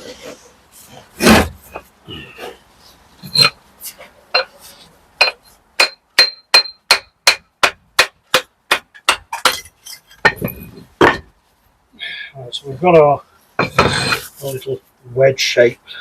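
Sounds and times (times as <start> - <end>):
steel hammer chipping brick: 5.2 - 10.5.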